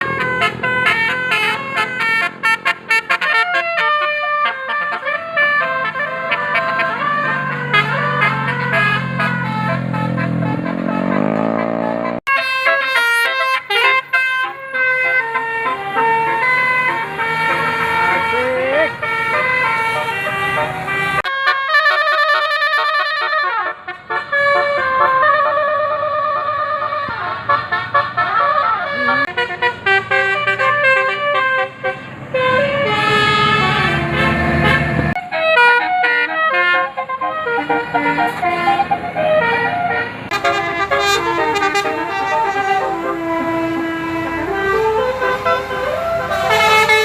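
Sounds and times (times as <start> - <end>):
bus musical air horn melody: 0.0 - 47.0.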